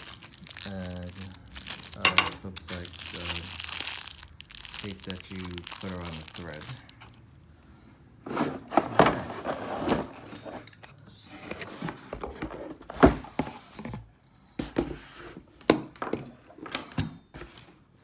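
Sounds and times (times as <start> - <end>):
packaging rustle: 0.0 - 7.2, 8.3 - 10.7.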